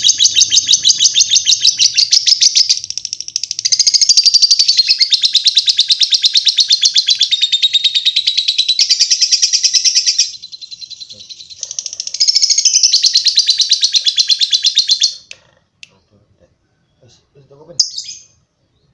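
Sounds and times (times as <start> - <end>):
lovebird chattering trill: 0.0 - 15.4, 17.7 - 18.4.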